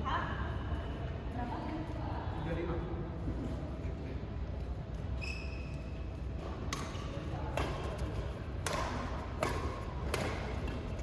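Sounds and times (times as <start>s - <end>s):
shoe squeak: 5.1s - 6.2s
rackets striking shuttlecock: 6.4s - 11.0s.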